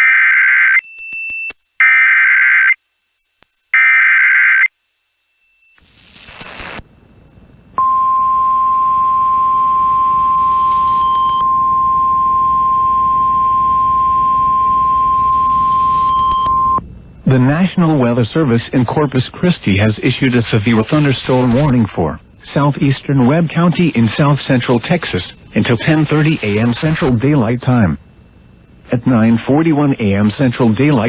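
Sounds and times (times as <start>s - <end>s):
noise burst: 4.7s - 31.0s
digital data tones: 7.8s - 16.8s, 20.1s - 21.8s, 25.4s - 27.1s
steady attention tone: 7.8s - 31.0s.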